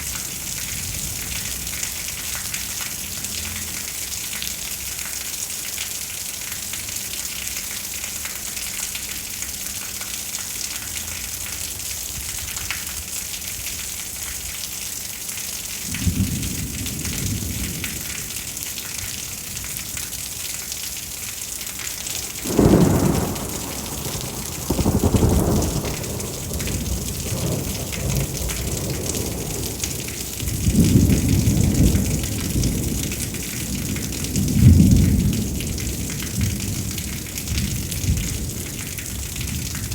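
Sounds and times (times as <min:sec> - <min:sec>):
steady rain falling: 0:00.0 - 0:39.9
low rolls of thunder: 0:15.9 - 0:19.8, 0:22.1 - 0:39.9.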